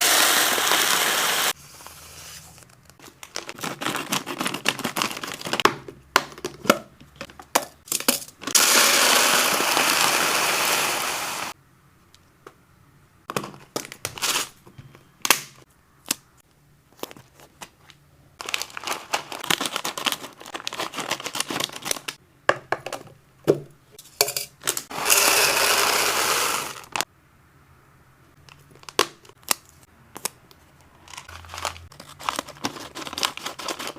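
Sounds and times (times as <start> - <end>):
packaging rustling and crinkling: 1.5 - 5.6, 16.9 - 22.2, 28.5 - 33.9.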